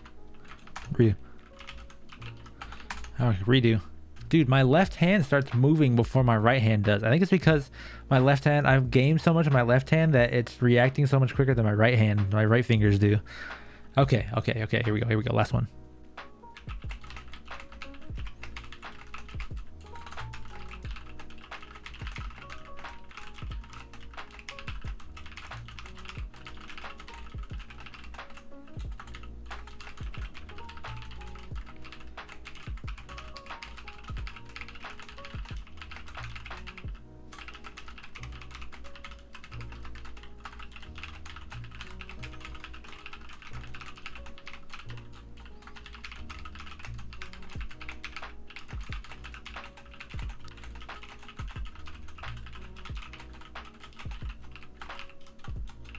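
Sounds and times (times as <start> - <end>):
fast keyboard typing: 0.0 - 3.2, 16.5 - 55.9
lo-fi music with steady beat: 0.0 - 55.9.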